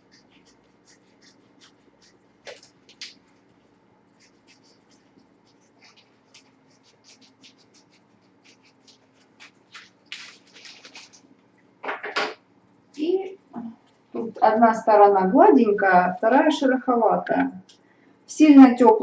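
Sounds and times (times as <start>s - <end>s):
paper rustling and crinkling: 1.6s - 11.3s.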